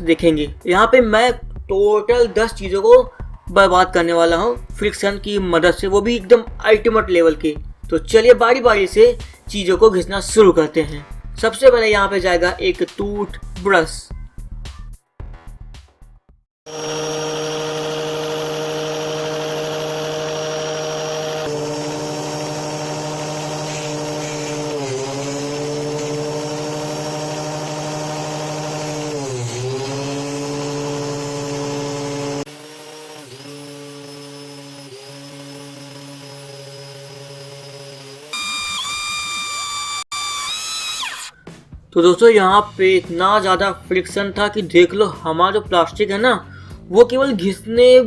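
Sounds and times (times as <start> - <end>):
angle grinder whining: 16.7 - 41.6.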